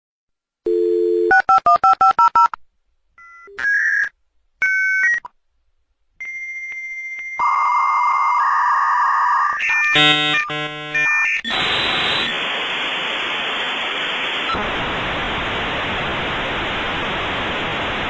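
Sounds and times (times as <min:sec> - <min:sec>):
dial tone: 0:00.6 - 0:01.5
modem hissing screech: 0:07.5 - 0:10.5, 0:11.4 - 0:12.9
touch-tone dialing beeps: 0:09.6 - 0:12.0.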